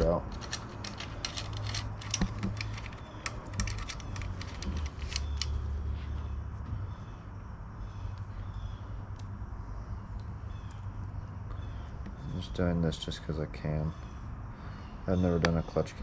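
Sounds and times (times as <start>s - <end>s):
metallic clicks of screw turning: 0.3s - 5.6s.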